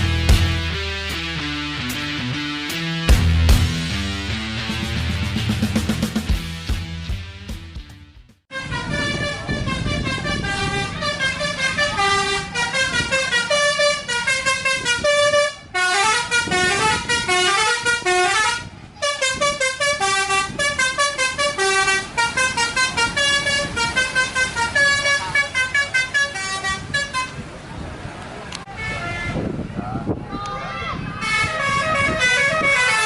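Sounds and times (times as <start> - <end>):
vehicle engine: 0.0 - 7.7, 8.6 - 29.2
multi-trumpet bus horn tune: 8.5 - 27.5, 28.7 - 29.6, 31.2 - 33.0.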